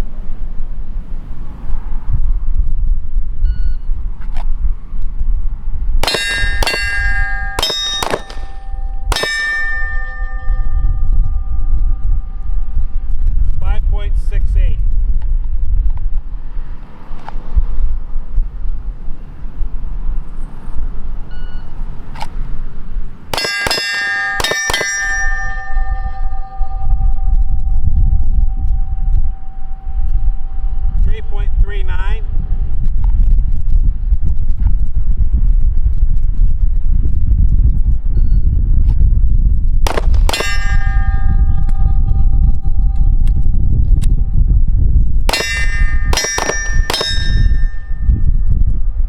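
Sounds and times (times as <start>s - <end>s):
wind rumble on microphone: 0.0s - 23.4s, 24.8s - 49.0s
pistol shots: 6.0s - 10.1s, 23.4s - 25.7s, 39.9s - 41.0s, 45.3s - 47.4s
steel plates ringing: 6.0s - 12.9s, 23.4s - 30.7s, 39.9s - 43.6s, 45.3s - 48.3s.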